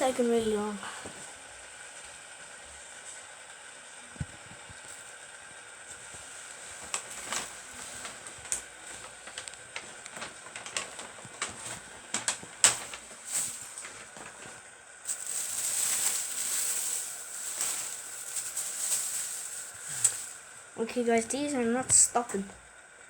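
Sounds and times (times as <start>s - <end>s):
fidget spinners whirring: 15.1s - 20.7s.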